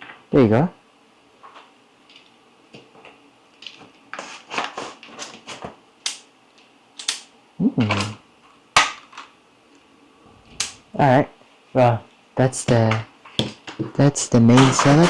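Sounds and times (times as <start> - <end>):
short vocal sound: 7.6 - 8.2.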